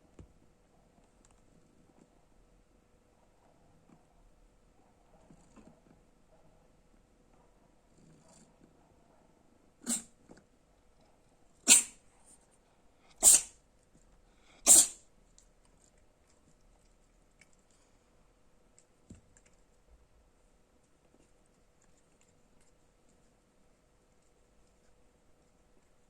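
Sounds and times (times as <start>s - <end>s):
cat sneezing: 9.8s - 10.1s, 11.6s - 12.0s, 13.1s - 13.6s, 14.5s - 15.0s.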